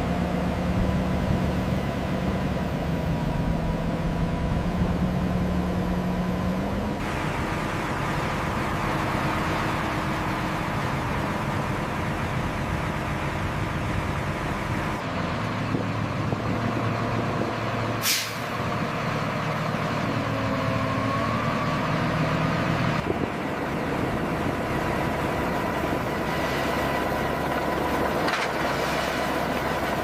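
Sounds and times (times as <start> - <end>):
heavy machinery engine running: 0.0 - 30.0
short sharp hiss: 18.0 - 18.5.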